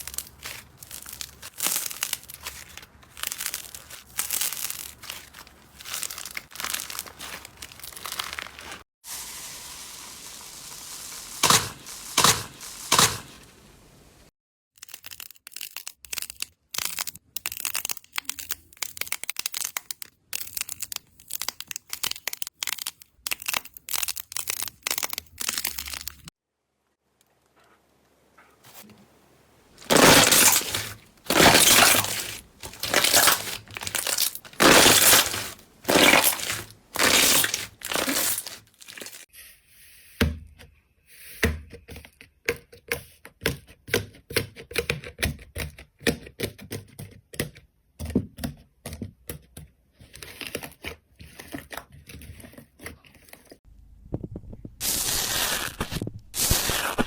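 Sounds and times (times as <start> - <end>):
slime crunching: 0.0 - 8.8, 11.2 - 13.6, 14.9 - 26.3, 29.8 - 39.3.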